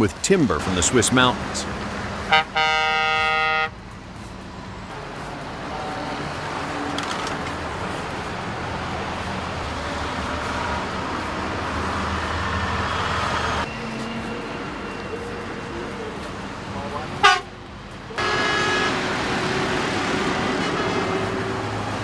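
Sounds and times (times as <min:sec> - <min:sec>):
logging trucks driving past: 0:00.0 - 0:22.0.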